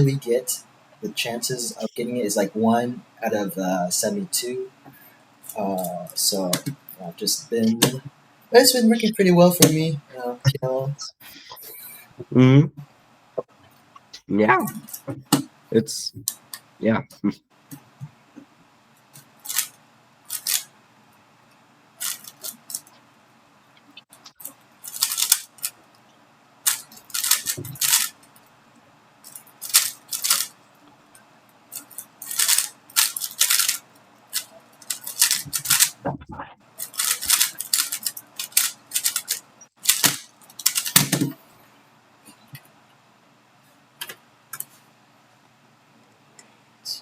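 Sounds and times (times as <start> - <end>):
puzzle cube plastic clicking: 20.3 - 20.6, 24.9 - 25.7, 26.7 - 28.1, 29.6 - 30.5, 31.8 - 36.0, 36.8 - 41.3.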